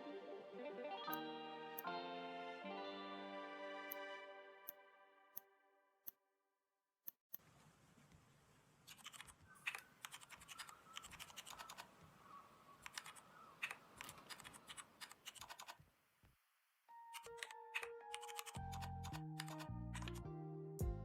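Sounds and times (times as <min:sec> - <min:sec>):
typing on computer keyboard: 0:08.9 - 0:11.9, 0:12.8 - 0:15.8, 0:17.1 - 0:20.2.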